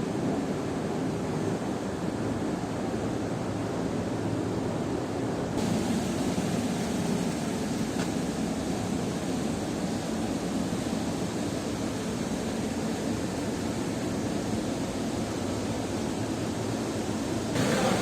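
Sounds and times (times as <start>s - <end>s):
flowing water rushing: 17.6s - 18.0s.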